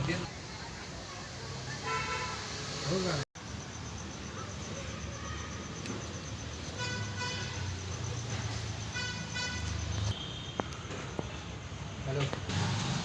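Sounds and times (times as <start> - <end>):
vehicle horn honking: 6.8 - 7.8, 8.9 - 10.6.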